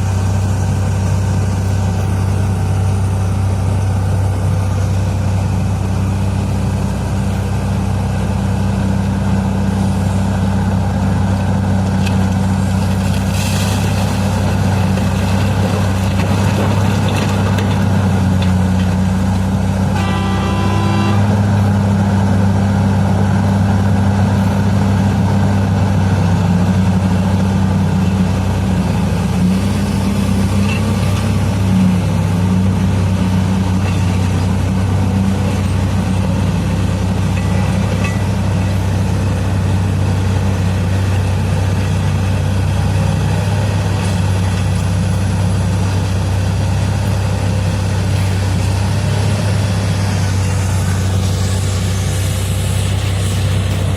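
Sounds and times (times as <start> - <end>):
heavy diesel engines humming: 0.0 - 53.9
horn blast: 19.9 - 21.8.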